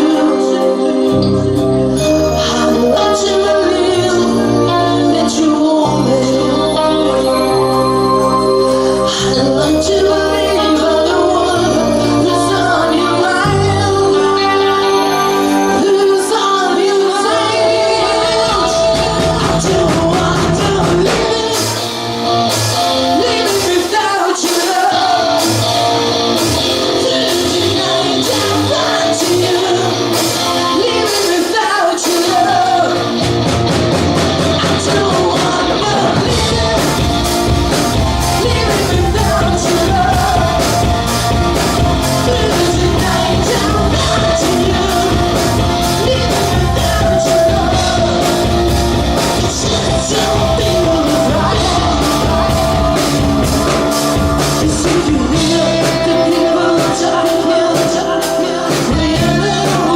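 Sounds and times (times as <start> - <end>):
rock music with singer: 0.0 - 59.9.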